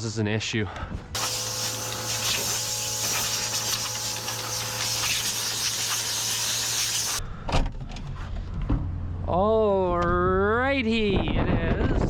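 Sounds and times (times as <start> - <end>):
compressed air hissing: 1.2 - 7.2.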